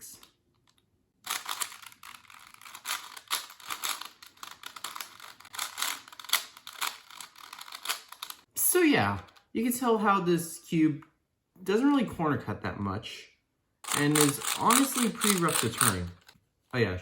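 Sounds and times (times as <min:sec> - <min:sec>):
plastic cube clicks and clacks: 0:01.3 - 0:08.4, 0:13.9 - 0:16.4.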